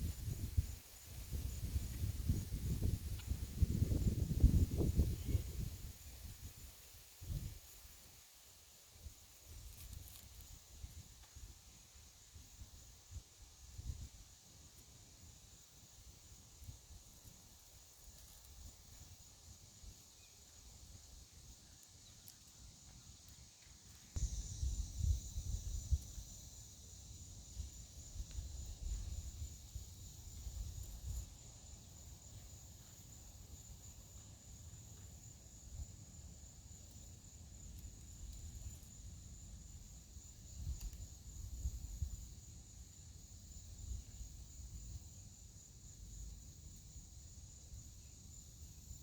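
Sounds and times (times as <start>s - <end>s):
high-pitched insect drone: 0.0s - 6.6s, 24.2s - 31.4s.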